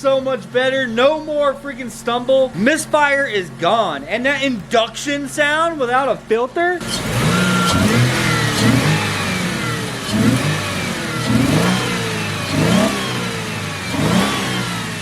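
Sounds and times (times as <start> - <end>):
car engine revving: 6.8 - 15.0.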